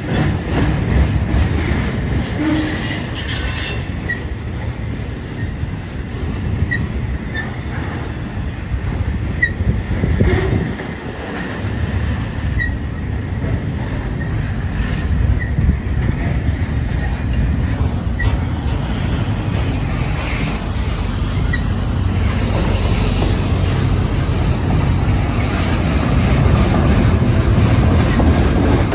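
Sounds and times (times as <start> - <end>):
freight train cars rumbling past: 0.0 - 28.9
high wheel squeaks: 2.3 - 4.3, 19.4 - 25.7.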